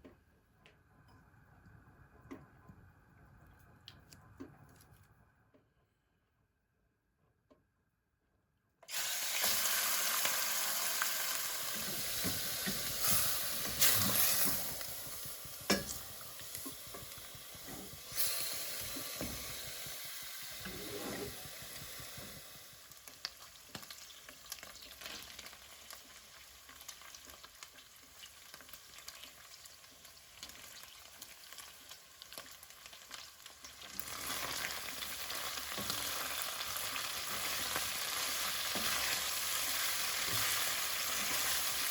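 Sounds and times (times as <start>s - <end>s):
food sizzling in a pan: 8.9s - 41.9s.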